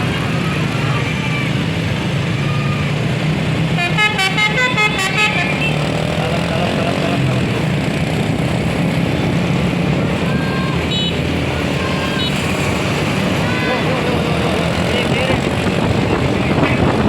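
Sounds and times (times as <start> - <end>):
bus engine: 0.0 - 17.0
road traffic: 0.0 - 17.0
bus musical air horn notes: 3.8 - 5.9.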